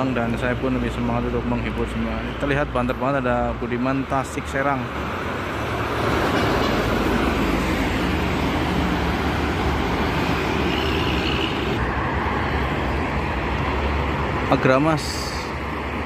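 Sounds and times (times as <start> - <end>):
fast highway traffic passing: 0.0 - 16.0.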